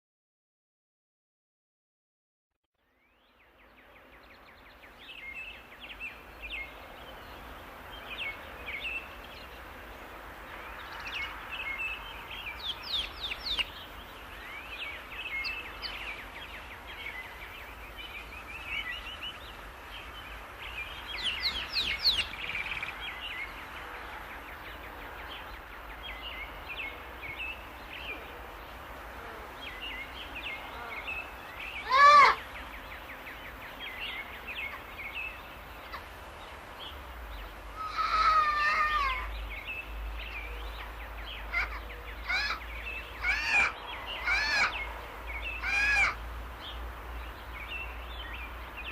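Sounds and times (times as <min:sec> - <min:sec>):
small birds chirping and trilling: 0:02.8 - 0:48.9
loud bird call: 0:30.8 - 0:32.6, 0:37.7 - 0:39.6, 0:40.8 - 0:46.2.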